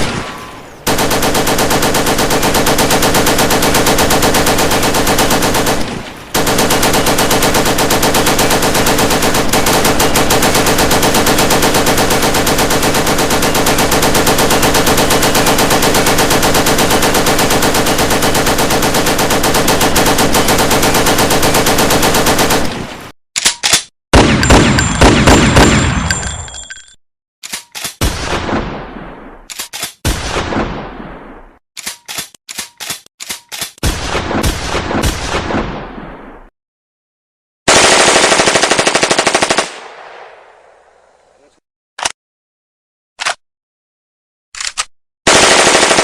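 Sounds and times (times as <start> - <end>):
automatic gunfire bursts: 0.9 - 22.7, 24.2 - 26.0, 37.7 - 39.8, 45.3 - 46.0.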